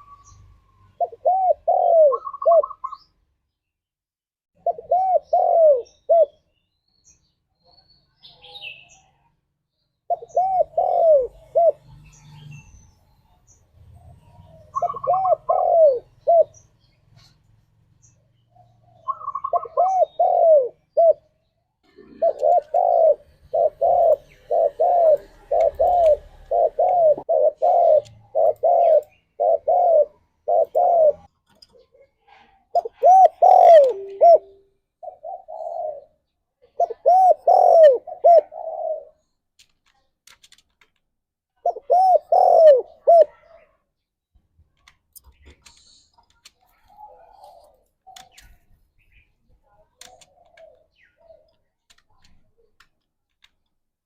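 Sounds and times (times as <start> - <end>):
dove cooing: 0.0 - 3.1, 4.6 - 6.4, 10.1 - 11.9, 14.0 - 16.6, 18.6 - 21.3, 21.9 - 32.1, 32.7 - 39.2, 41.6 - 43.8, 46.8 - 48.6, 50.0 - 51.6.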